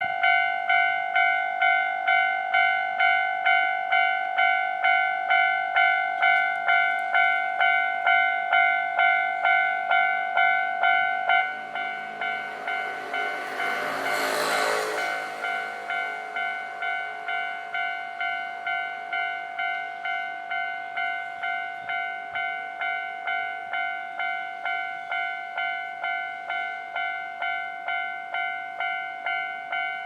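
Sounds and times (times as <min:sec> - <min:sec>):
level-crossing bell ringing: 0:00.0 - 0:30.0
train wheels rushing: 0:11.5 - 0:18.4.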